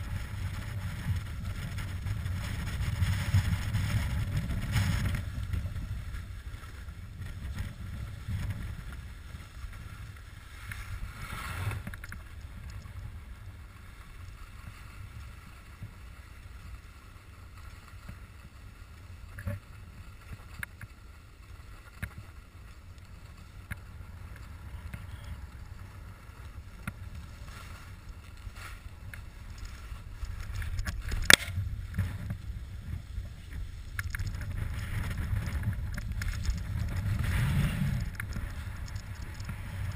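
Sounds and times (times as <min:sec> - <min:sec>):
wind buffeting microphone: 0:00.0 - 0:13.7, 0:28.8 - 0:39.9
skis sliding on snow: 0:00.0 - 0:39.9.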